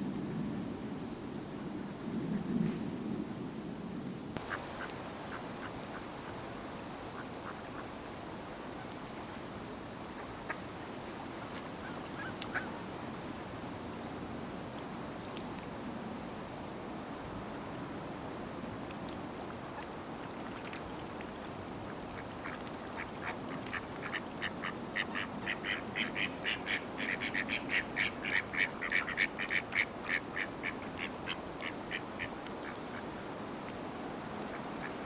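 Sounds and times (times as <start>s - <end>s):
steady background noise: 4.4s - 35.0s
duck quacking: 22.4s - 32.8s.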